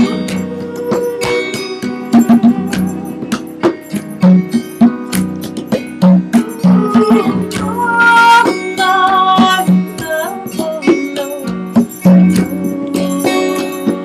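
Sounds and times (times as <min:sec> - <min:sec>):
flute melody: 0:00.0 - 0:03.9
hand drum beats: 0:00.0 - 0:14.0
plucked guitar: 0:00.0 - 0:14.0.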